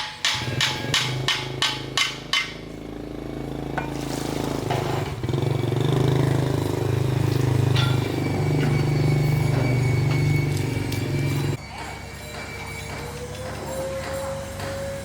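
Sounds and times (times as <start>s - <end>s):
hammer blows: 0.0s - 2.8s, 3.8s - 15.0s
engine running steadily: 0.3s - 12.1s.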